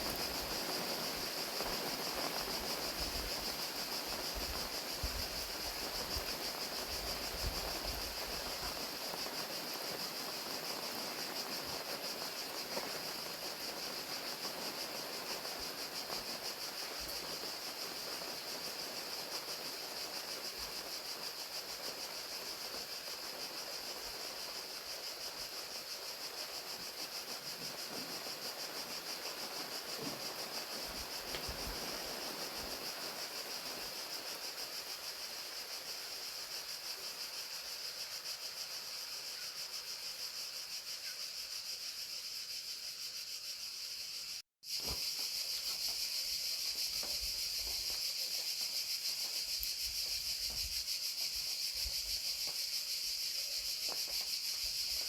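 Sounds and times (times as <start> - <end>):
rain pattering: 0.0 - 37.1
crickets chirping: 0.0 - 55.0.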